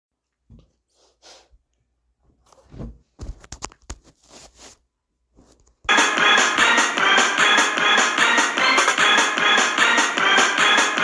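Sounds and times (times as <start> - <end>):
loud music with repeating beat: 5.9 - 11.0.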